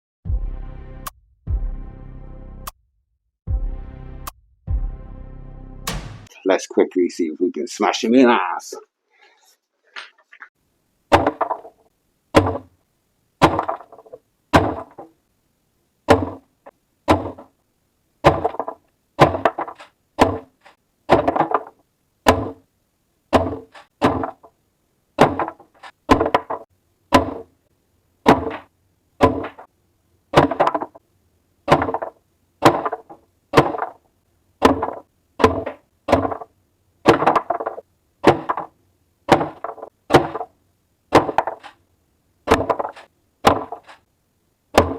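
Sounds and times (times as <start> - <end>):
shotgun firing: 5.9 - 6.3.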